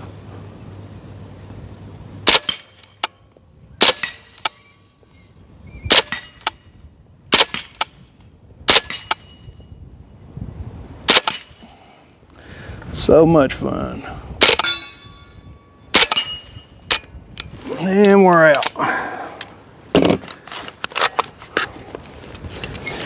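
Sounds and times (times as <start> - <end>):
suppressed gunshots: 2.2 - 2.7.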